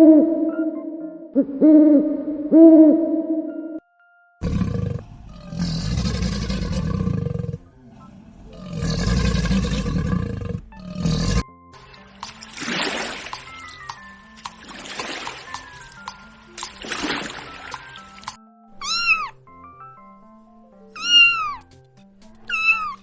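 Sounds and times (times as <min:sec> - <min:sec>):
music: 0:00.0 - 0:01.4, 0:02.5 - 0:23.0
owl-like hoots: 0:00.0 - 0:03.8
big cat roaring and growling: 0:04.4 - 0:11.4.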